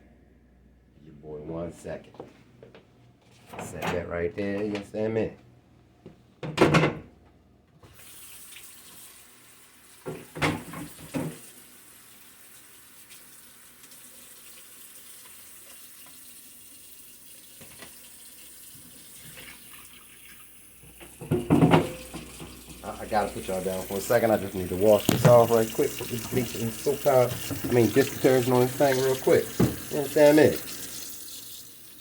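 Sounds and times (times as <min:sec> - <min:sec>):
tap water running into sink: 0:08.0 - 0:09.3, 0:09.9 - 0:32.0.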